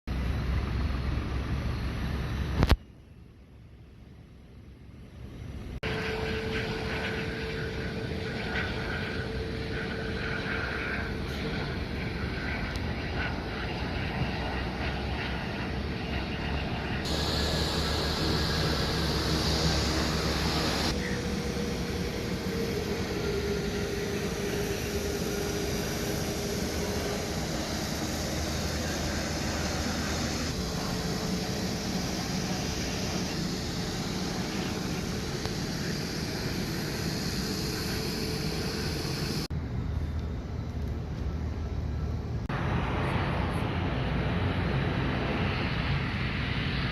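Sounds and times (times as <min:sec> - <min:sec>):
jet engines rumbling: 0:00.1 - 0:46.9
bright hiss: 0:17.1 - 0:39.5.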